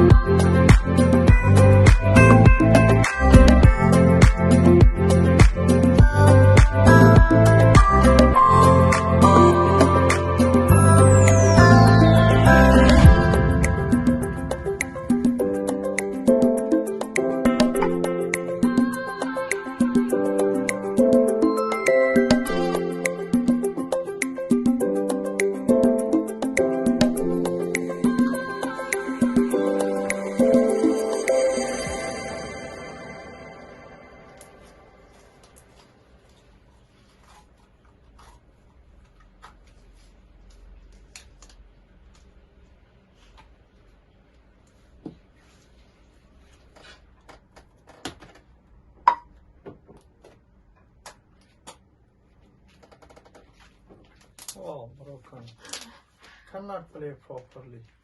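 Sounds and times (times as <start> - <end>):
upbeat music with percussion: 0.0 - 34.7.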